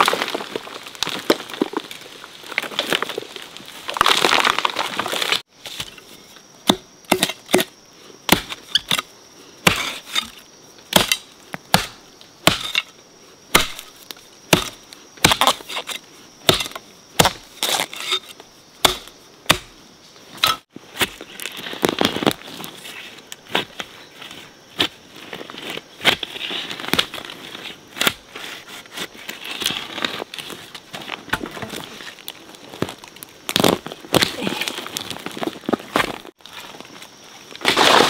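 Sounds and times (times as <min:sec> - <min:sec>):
tool chopping wood: 0:06.6 - 0:07.7, 0:08.3 - 0:09.0, 0:10.9 - 0:12.9, 0:13.5 - 0:13.9, 0:14.5 - 0:15.8, 0:16.5 - 0:17.9, 0:18.8 - 0:19.8.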